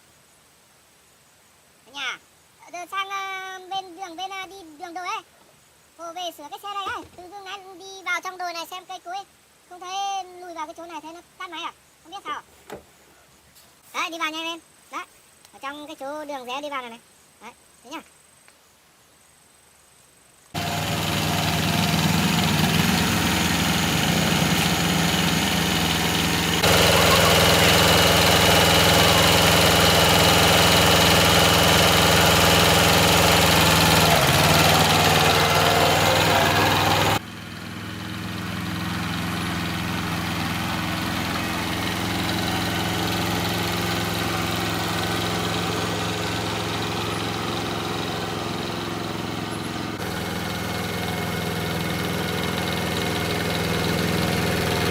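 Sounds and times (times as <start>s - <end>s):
vehicle engine idling: 20.6s - 54.9s.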